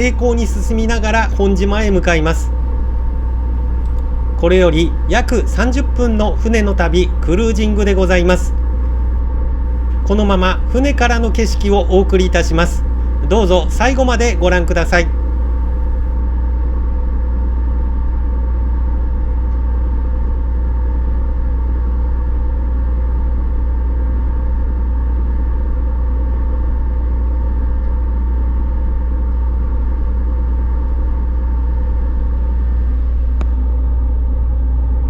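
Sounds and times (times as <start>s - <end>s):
constant engine hum: 0.0s - 16.2s
ship engines rumbling: 0.0s - 16.2s.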